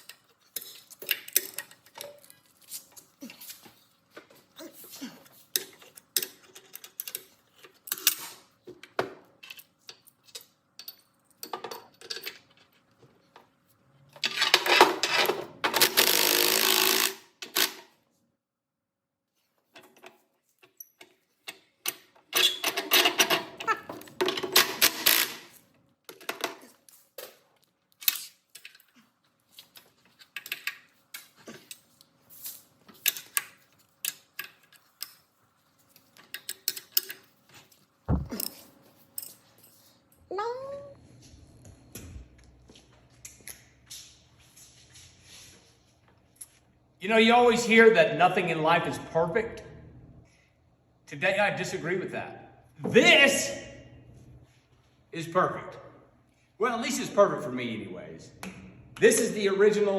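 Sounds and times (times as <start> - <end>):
tools and metal parts clicking: 0.0 - 3.7, 5.5 - 8.4, 9.4 - 12.8, 28.0 - 29.0, 29.6 - 35.3, 35.9 - 39.9.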